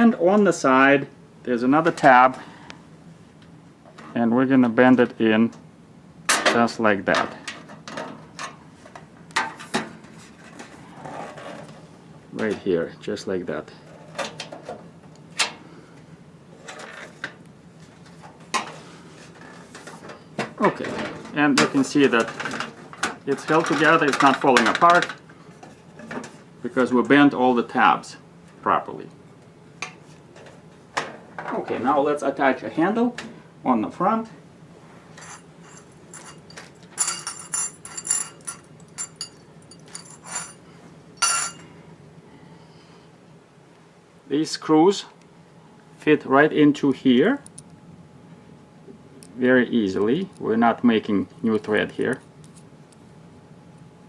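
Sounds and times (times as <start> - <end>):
small metal parts clinking: 35.2 - 40.6, 41.2 - 41.6.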